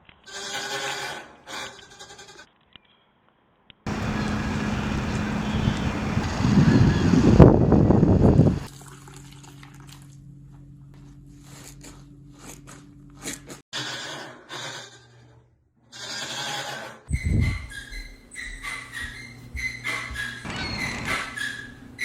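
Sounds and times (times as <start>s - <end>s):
washing machine hum: 3.9s - 10.9s.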